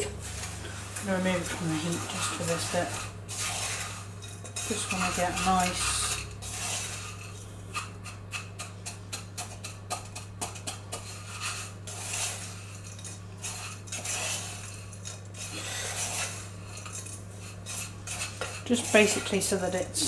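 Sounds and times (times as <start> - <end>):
utensil scraping a saucepan: 0.0 - 20.0
utensil clicking against pan: 7.8 - 11.2.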